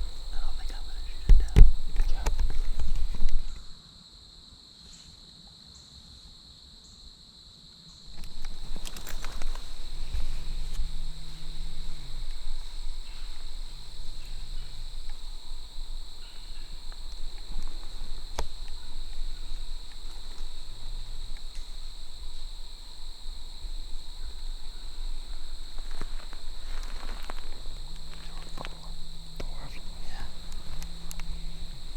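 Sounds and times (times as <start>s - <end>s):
insects droning: 0.0s - 31.9s
low rumble: 8.1s - 31.9s.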